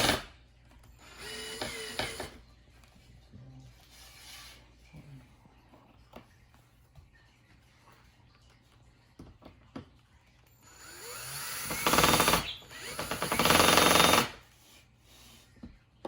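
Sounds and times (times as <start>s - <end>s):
cordless drill driving screw: 1.0s - 2.4s, 10.7s - 14.4s.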